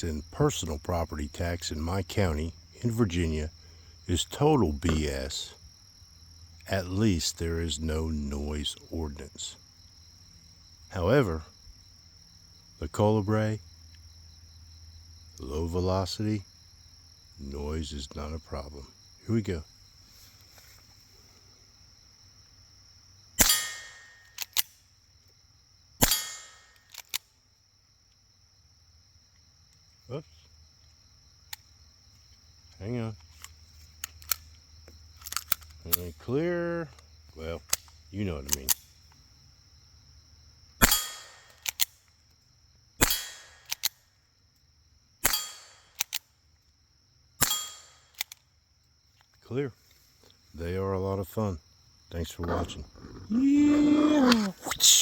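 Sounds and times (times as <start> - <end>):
crickets chirping: 0.0 - 55.0
handgun shots: 23.4 - 24.6, 26.0 - 26.8, 40.8 - 41.9, 43.0 - 44.0, 45.2 - 46.2, 47.4 - 48.4
sharp clicks: 23.4 - 24.7, 40.8 - 42.0, 43.0 - 44.0, 45.2 - 46.2, 47.4 - 48.5
quick clicks: 40.8 - 41.9, 45.2 - 46.2.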